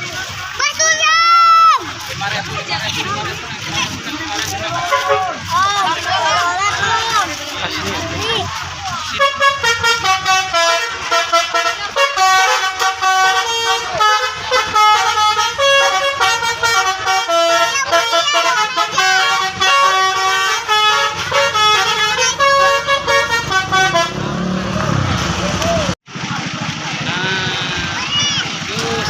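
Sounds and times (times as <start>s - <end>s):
multi-tone bus horn playing tune: 4.8s - 5.5s, 9.0s - 25.0s.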